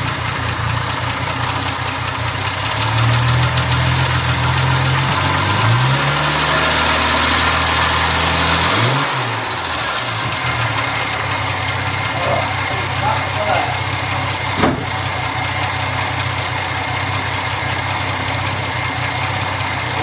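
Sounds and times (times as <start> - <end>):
car engine running: 0.0 - 20.0.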